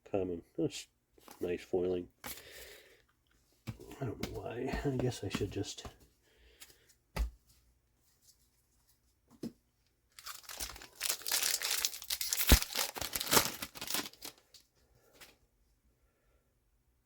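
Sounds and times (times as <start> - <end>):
wrapper being torn and crinkled: 10.2 - 14.5.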